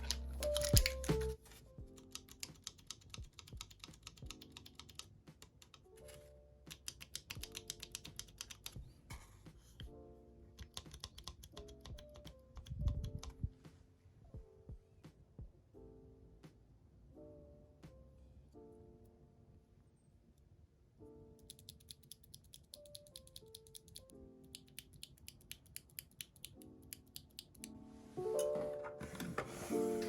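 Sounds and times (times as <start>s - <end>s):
mechanical keyboard key clacks: 0.0s - 1.2s, 2.0s - 5.9s, 6.7s - 8.8s, 10.6s - 13.4s, 21.4s - 27.7s
soft background music: 0.0s - 30.0s.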